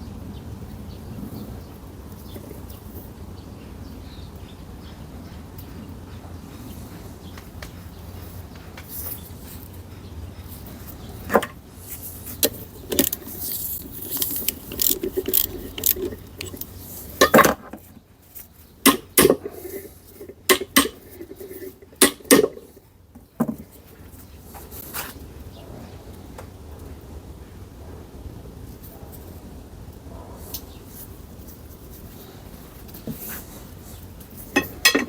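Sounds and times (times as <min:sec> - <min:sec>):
metal tools clinking and knocking: 0:11.2 - 0:11.6, 0:12.2 - 0:17.9, 0:18.8 - 0:22.8, 0:34.4 - 0:35.0.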